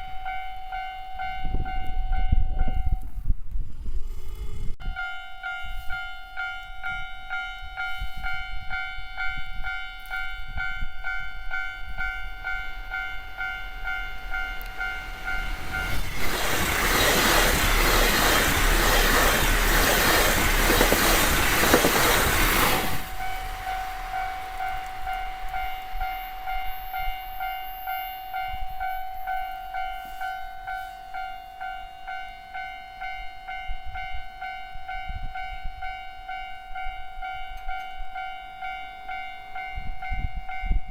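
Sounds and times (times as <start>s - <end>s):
train rushing past: 12.0s - 27.6s.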